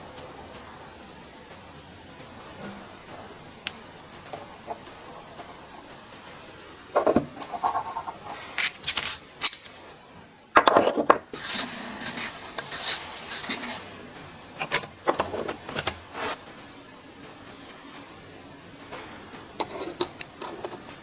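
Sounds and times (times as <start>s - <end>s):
handling and rubbing noise: 3.8s - 10.0s, 10.7s - 16.5s, 19.6s - 21.0s
small hard parts clinking: 7.0s - 9.8s.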